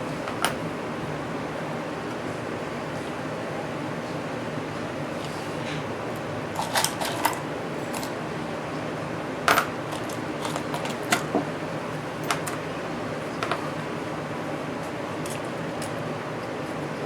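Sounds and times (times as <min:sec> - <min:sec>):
fan hiss: 0:00.0 - 0:17.0
tools and metal parts clicking: 0:06.6 - 0:08.2, 0:09.5 - 0:11.3.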